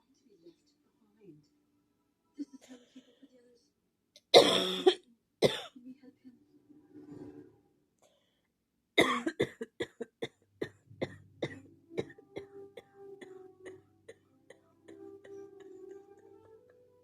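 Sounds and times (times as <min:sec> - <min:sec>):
person coughing: 0:04.4 - 0:05.8, 0:09.0 - 0:12.5.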